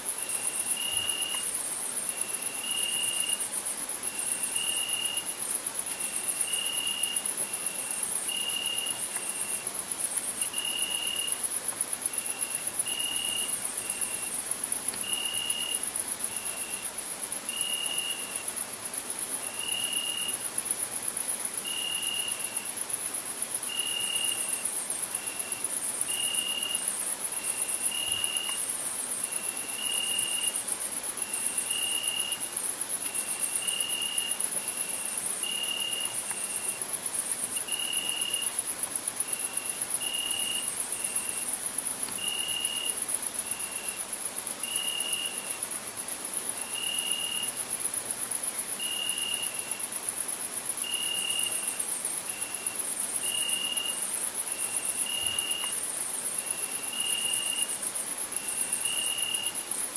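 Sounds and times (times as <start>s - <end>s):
crickets chirring: 0.0s - 59.9s.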